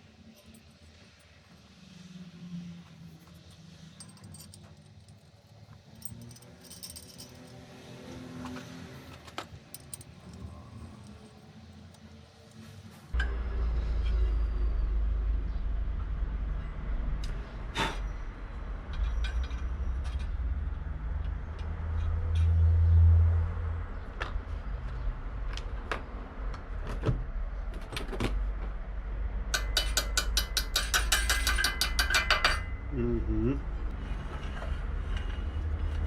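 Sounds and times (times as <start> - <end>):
metal clinks of hand tools: 3.1 - 7.8, 9.1 - 12.7, 29.6 - 32.8.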